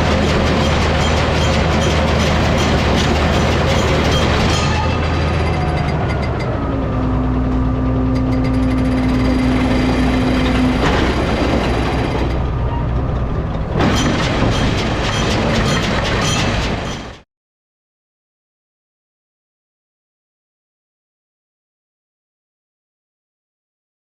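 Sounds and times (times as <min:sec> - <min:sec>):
farm machinery clatter: 0:00.0 - 0:17.2
tractor engine running: 0:00.0 - 0:17.2.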